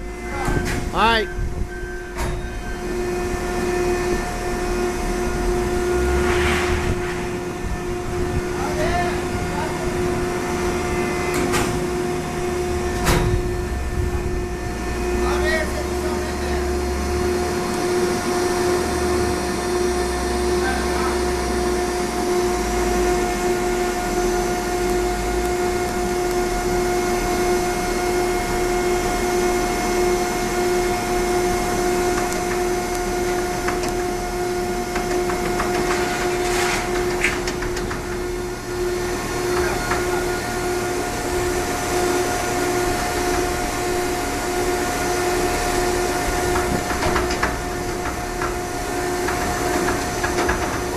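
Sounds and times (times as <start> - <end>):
baling machine humming and whining: 0.0 - 50.9.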